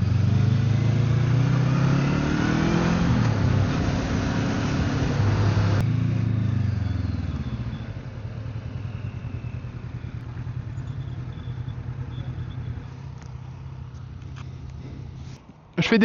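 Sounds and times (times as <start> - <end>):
motorcycle engine slowing to idle: 5.8 - 15.2.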